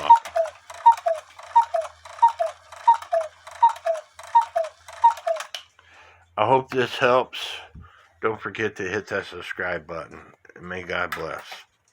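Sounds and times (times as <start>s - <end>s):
clock works clicking: 0.0s - 5.7s
cuckoo clock calls: 0.0s - 5.7s.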